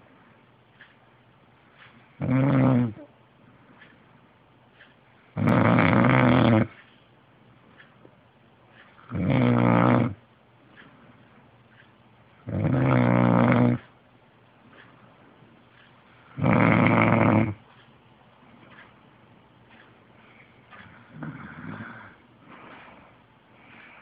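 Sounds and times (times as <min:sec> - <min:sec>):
quiet breathing: 0:00.0 - 0:19.0, 0:19.7 - 0:24.0
man snoring: 0:02.2 - 0:03.0, 0:05.4 - 0:06.8, 0:09.1 - 0:10.2, 0:12.4 - 0:13.8, 0:16.4 - 0:17.6, 0:21.1 - 0:22.2.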